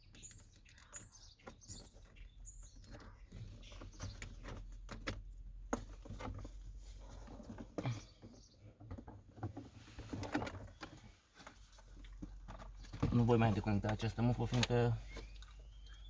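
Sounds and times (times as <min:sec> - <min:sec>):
bird chirping: 0:00.0 - 0:04.9, 0:07.8 - 0:09.0, 0:12.5 - 0:16.0.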